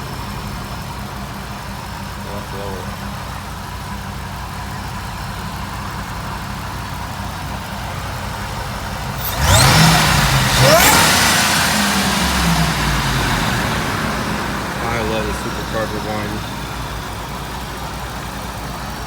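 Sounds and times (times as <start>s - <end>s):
truck engine idling: 0.0s - 19.0s
engine revving with whine: 8.7s - 18.8s.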